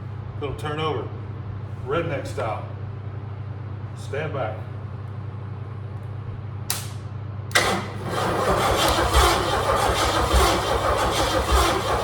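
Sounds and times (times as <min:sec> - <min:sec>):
starter motor cranking engine: 0:07.5 - 0:12.0.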